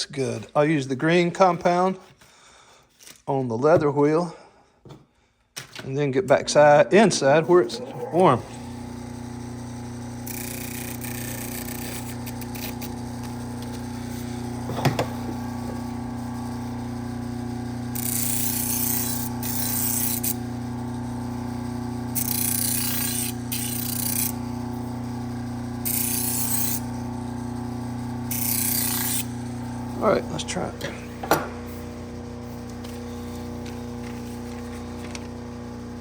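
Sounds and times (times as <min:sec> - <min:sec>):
stropping wheel motor hum: 0:07.2 - 0:36.0
knife rubbing hiss on strop: 0:18.0 - 0:20.4, 0:22.2 - 0:24.3, 0:25.8 - 0:26.9, 0:28.3 - 0:29.4.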